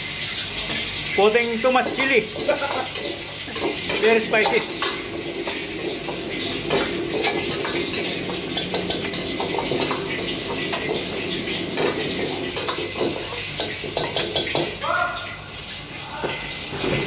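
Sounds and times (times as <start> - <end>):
food sizzling in pan: 0.0 - 17.0
spatula scraping pan: 1.8 - 14.8.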